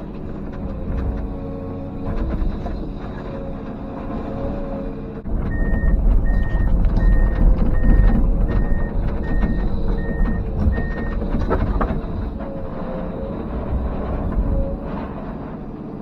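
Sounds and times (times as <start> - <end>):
diesel engine running: 0.0 - 16.0
backup alarm beeping: 5.5 - 11.2.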